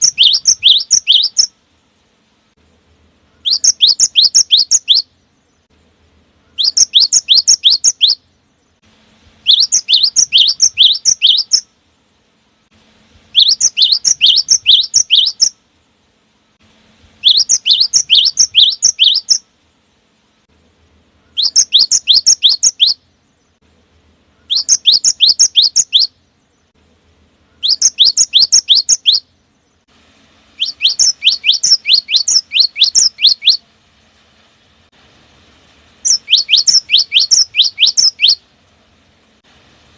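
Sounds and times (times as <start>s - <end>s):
bird singing high sweeping notes: 0.0s - 1.5s, 3.3s - 5.7s, 6.4s - 8.8s, 9.4s - 11.7s, 13.3s - 15.6s, 17.2s - 19.4s, 21.2s - 23.6s, 24.3s - 26.8s, 27.4s - 29.9s, 30.5s - 33.6s, 36.0s - 38.5s.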